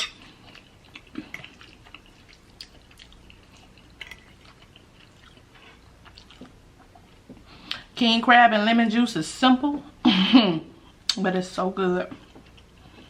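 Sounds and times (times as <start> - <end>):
wet chewing clicks and smacks: 0.6 - 7.2.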